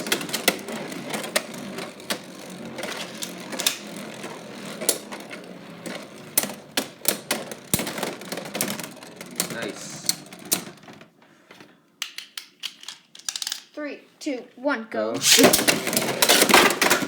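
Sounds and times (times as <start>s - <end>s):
spinning tops whirring and scraping: 0.0s - 10.9s, 15.2s - 17.0s.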